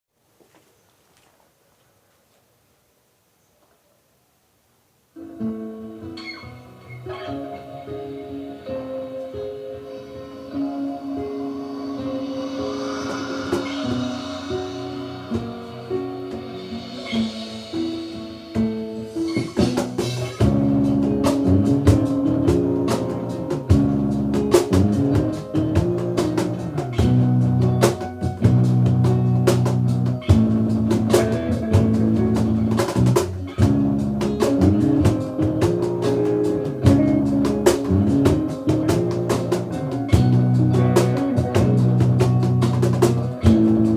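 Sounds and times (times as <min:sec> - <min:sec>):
music with busy drum beat: 0:16.4 - 0:43.9.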